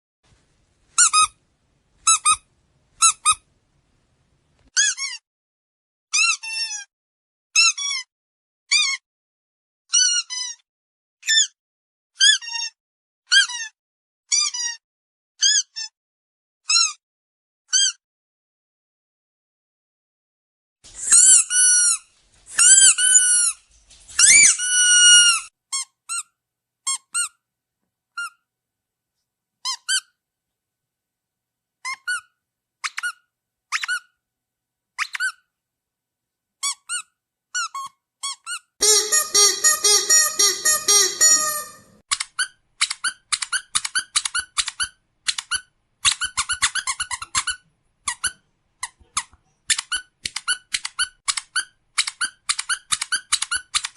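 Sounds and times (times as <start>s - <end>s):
squeaky dog toy squeaking: 1.0s - 1.4s, 2.0s - 3.4s, 4.7s - 5.2s, 6.1s - 6.9s, 7.6s - 8.1s, 8.7s - 9.0s, 9.9s - 10.6s, 12.2s - 14.8s, 15.4s - 16.0s, 16.7s - 17.0s, 17.7s - 18.0s, 21.0s - 26.3s, 29.6s - 30.2s, 31.8s - 34.2s, 35.0s - 35.5s, 36.6s - 53.9s.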